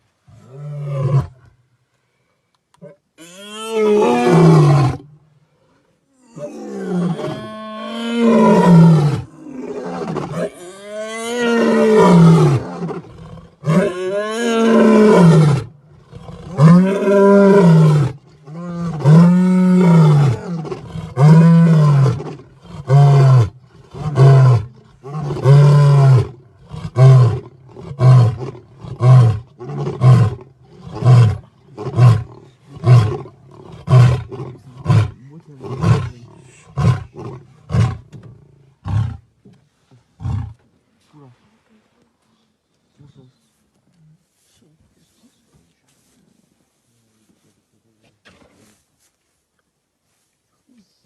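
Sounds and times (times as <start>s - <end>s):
lion roaring: 3.2s - 5.1s, 6.2s - 39.2s
lion grunting roars: 6.2s - 39.2s.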